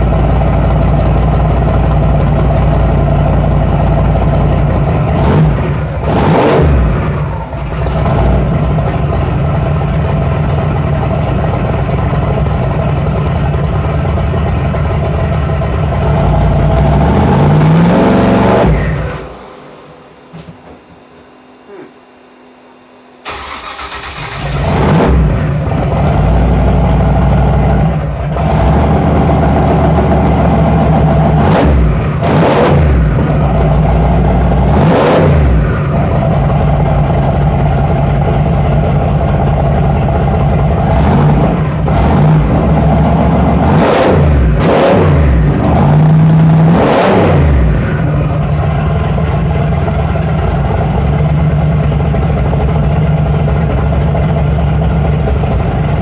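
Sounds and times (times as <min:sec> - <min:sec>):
engine revving: 0:00.0 - 0:09.4, 0:15.9 - 0:19.4, 0:23.3 - 0:54.0
truck engine starting: 0:00.0 - 0:20.2, 0:23.2 - 0:56.0.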